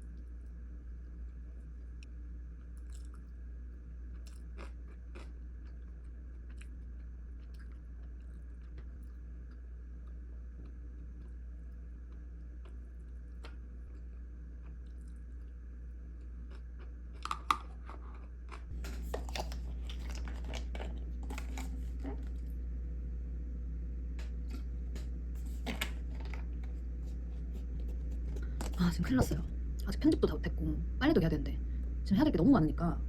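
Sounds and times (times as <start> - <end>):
person chewing crunchy food: 2.6 - 22.5.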